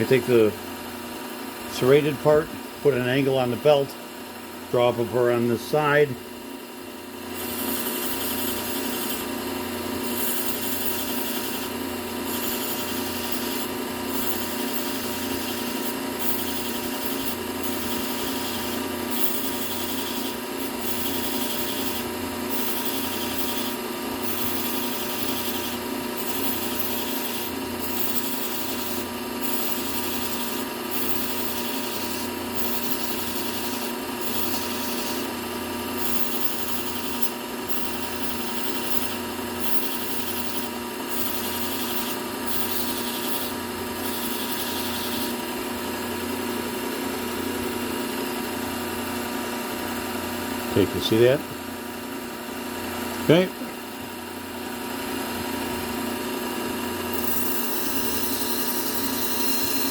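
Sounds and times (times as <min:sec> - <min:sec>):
knife grinding on belt sander: 0:01.6 - 0:03.9, 0:04.7 - 0:48.4, 0:49.3 - 0:59.9
sander motor hum: 0:04.7 - 0:59.9.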